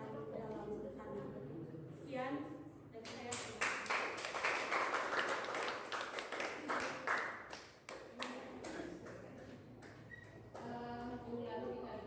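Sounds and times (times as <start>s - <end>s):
audience clapping: 3.5s - 8.4s.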